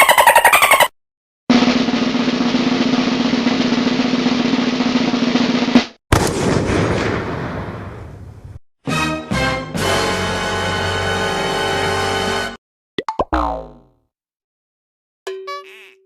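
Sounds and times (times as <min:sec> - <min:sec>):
snare drum roll: 0:01.5 - 0:06.0.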